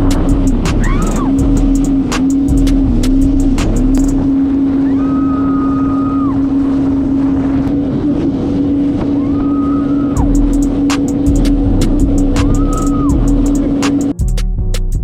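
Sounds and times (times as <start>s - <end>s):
wind on microphone: 0.0s - 14.0s
jet ski engine cruising: 0.0s - 14.1s
high engine whine: 0.0s - 14.2s.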